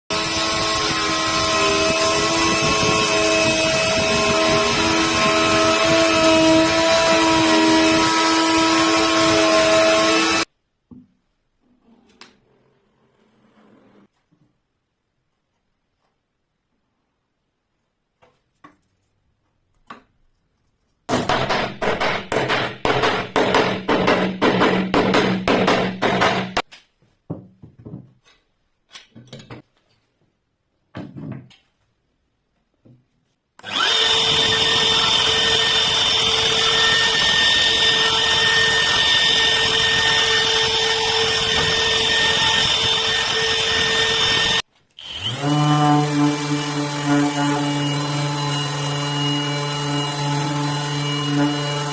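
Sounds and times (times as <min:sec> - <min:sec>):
electric router cutting wood: 0:00.1 - 0:10.5, 0:33.6 - 0:51.9.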